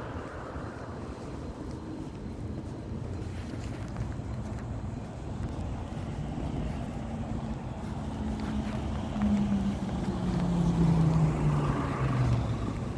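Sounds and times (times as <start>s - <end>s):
vehicle passing by: 0.0s - 2.6s, 6.0s - 12.9s
wind on microphone: 0.0s - 12.9s.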